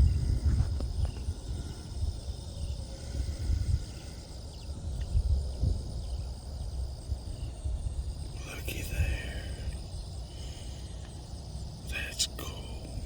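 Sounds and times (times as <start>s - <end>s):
wind buffeting microphone: 0.0s - 10.2s
high-pitched insect trill: 0.0s - 13.0s.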